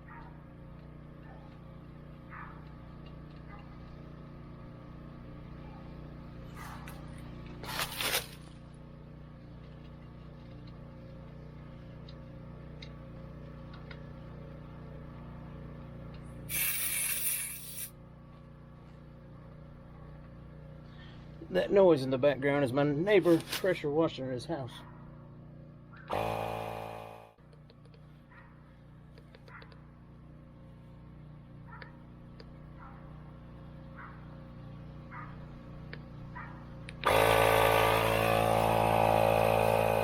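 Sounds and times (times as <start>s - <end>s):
tire inflator humming: 0.0s - 22.1s, 25.0s - 40.0s
pressure washer spray hissing: 16.5s - 17.9s.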